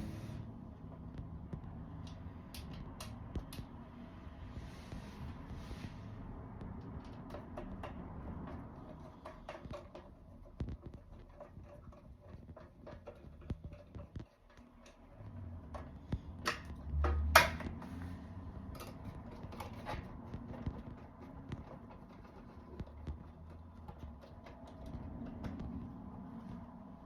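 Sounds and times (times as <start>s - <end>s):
clicks and knocks of metal cover: 7.0s - 17.9s.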